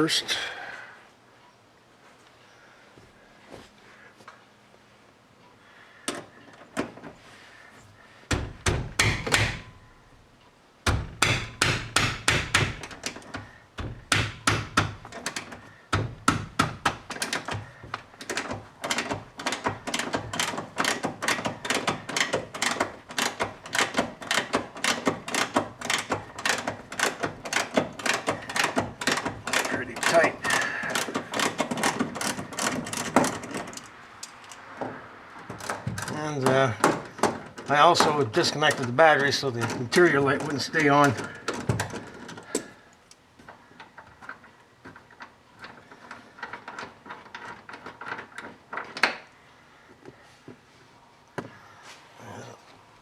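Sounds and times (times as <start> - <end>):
knocks: 8.3 - 9.7, 10.9 - 33.4
ratchet wrench clicking: 18.3 - 33.1.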